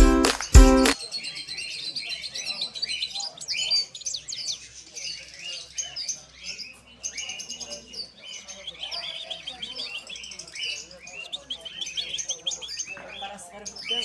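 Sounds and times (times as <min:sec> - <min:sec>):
music beat: 0:00.0 - 0:01.0
cage birds chirping: 0:00.0 - 0:14.0.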